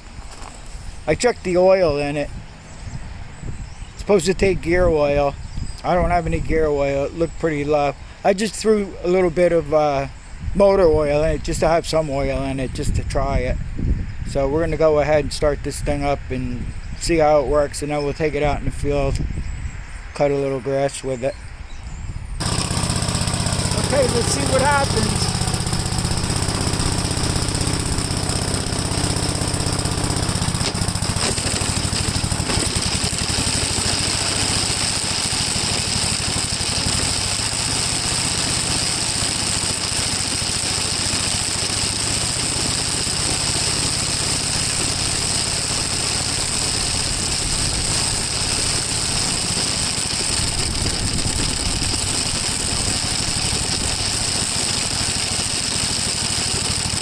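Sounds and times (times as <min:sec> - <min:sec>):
mower cutter bar rattling: 0:22.4 - 0:57.0
tractor engine running: 0:22.4 - 0:57.0.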